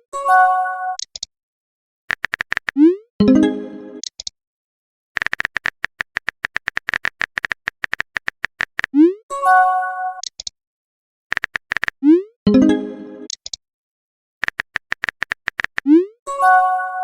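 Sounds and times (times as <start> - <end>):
phone keyboard tapping clicks: 1.0 - 1.3, 2.1 - 2.8, 4.0 - 4.3, 5.2 - 9.0, 10.2 - 10.5, 11.3 - 12.0, 13.3 - 13.6, 14.4 - 15.9
synthesized notification chime: 3.2 - 4.0, 12.5 - 13.3.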